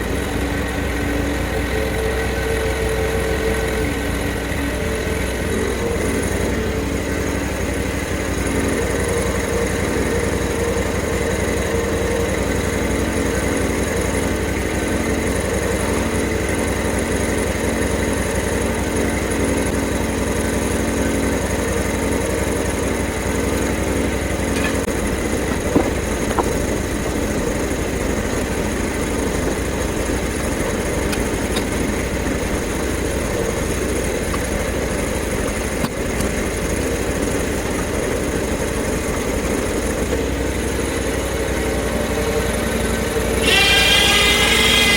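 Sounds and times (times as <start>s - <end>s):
pitched drone: 0.0s - 44.9s
small gas engine running: 0.0s - 44.9s
sharp knocks: 25.4s - 26.7s.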